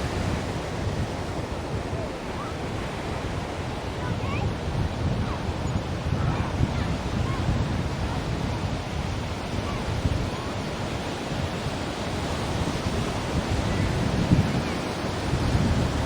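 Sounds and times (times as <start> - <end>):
ocean waves breaking: 0.0 - 16.0.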